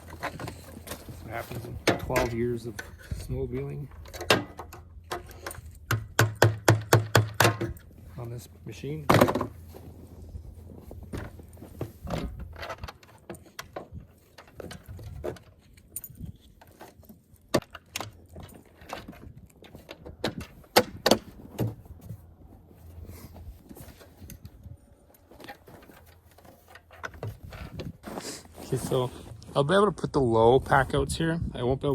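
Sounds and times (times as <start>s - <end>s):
metal hardware clicking and knocking: 0.0s - 7.9s.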